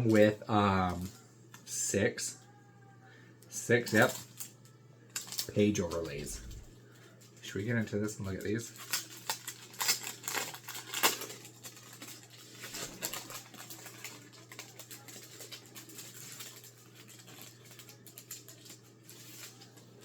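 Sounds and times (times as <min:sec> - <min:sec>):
low steady hum: 0:00.0 - 0:20.0
packaging rustling and clicking: 0:08.3 - 0:20.0.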